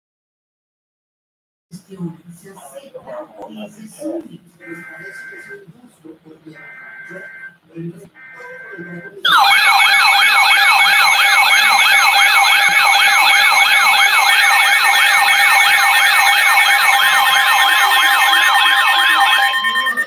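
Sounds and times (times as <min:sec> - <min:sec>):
steady alarm tone: 0:04.6 - 0:05.6, 0:06.5 - 0:07.6, 0:08.2 - 0:20.0
warbling electronic siren alarm: 0:04.6 - 0:05.6, 0:06.6 - 0:07.6, 0:08.2 - 0:20.0.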